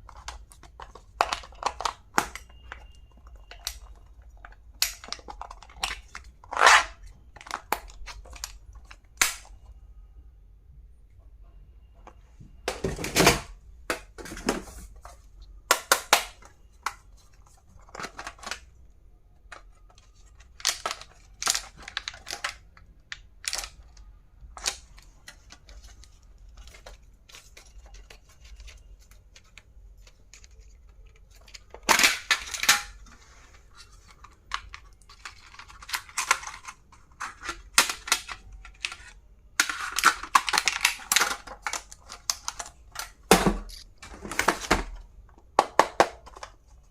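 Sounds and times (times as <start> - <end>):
packaging rustling: 23.4 - 45.0.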